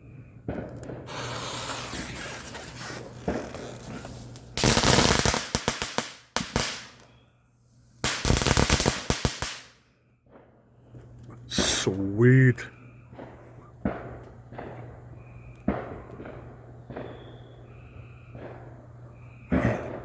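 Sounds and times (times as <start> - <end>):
firecrackers popping: 0.4 - 7.2, 7.9 - 20.0
firecracker hissing spray: 1.0 - 7.0, 8.0 - 9.7.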